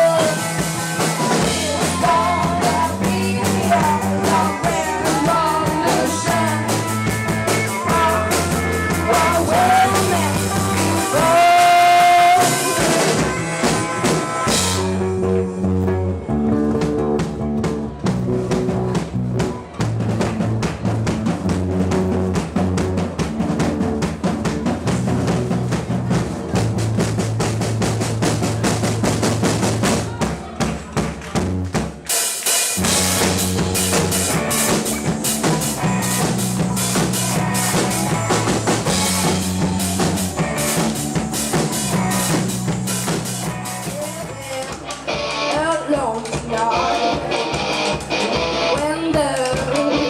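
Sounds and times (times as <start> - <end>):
bass line: 0.0 - 30.3, 32.8 - 50.0
drums: 0.0 - 50.0
rock band playing live: 0.0 - 50.0.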